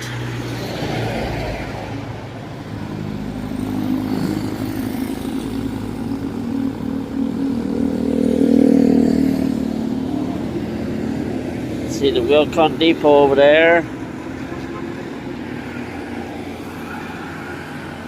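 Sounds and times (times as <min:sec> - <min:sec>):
vehicle engine running: 0:02.8 - 0:15.3.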